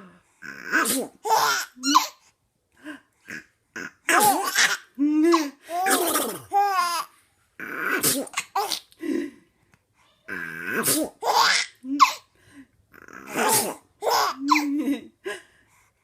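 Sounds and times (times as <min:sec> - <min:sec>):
baby laughing: 0:01.2 - 0:02.2, 0:10.8 - 0:12.2, 0:13.3 - 0:15.0
woman making comic sneezes: 0:10.8 - 0:11.2, 0:13.3 - 0:13.8.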